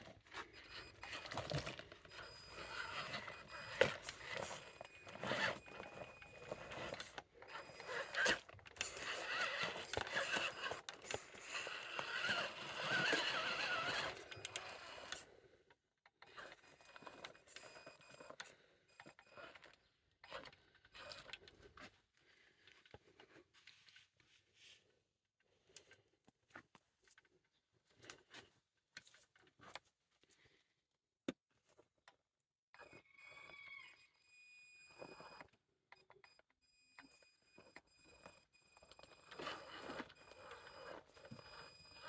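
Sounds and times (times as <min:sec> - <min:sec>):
electric motor whirring: 0:02.2 - 0:15.2
tyres scraping over rock: 0:07.8 - 0:14.1.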